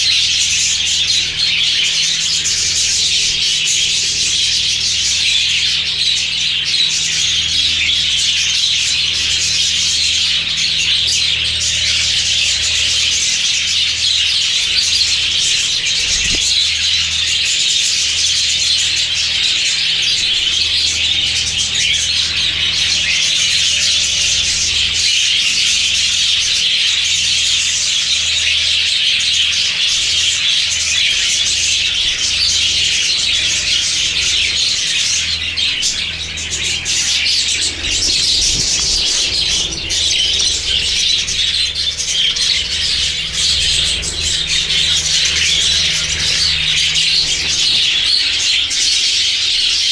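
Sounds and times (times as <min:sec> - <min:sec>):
budgerigars chattering: 0:00.0 - 0:49.9
low hum: 0:31.6 - 0:48.7.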